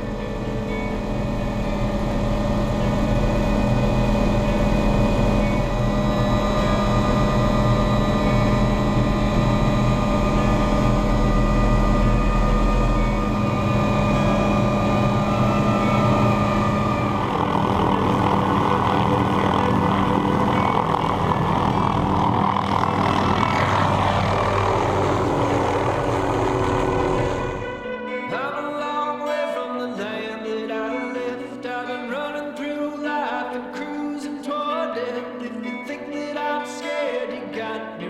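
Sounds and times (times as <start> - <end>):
aircraft engine drone: 0.0 - 29.2
rushing sound: 4.9 - 28.2.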